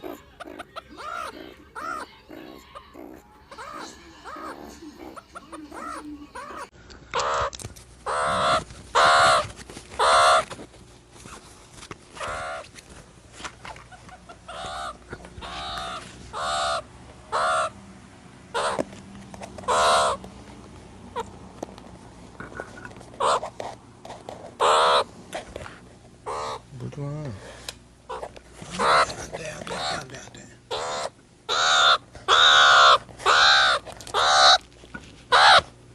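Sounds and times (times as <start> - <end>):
meerkats calling: 0.0 - 10.6, 12.1 - 12.7, 13.9 - 17.8, 18.5 - 18.9, 19.5 - 20.2, 23.2 - 23.7, 24.6 - 25.1, 26.2 - 26.8, 28.0 - 34.6, 35.3 - 35.8.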